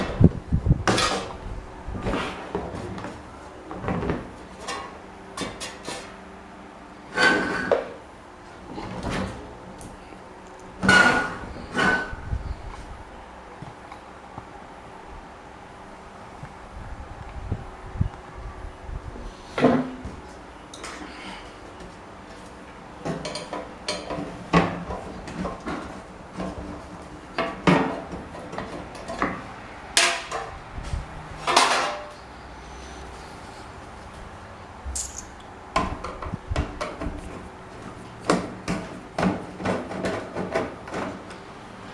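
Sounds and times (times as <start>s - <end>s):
metal fan parts knocking and clanking: 0.0s - 1.4s, 10.8s - 12.4s, 23.0s - 32.2s, 34.9s - 41.5s.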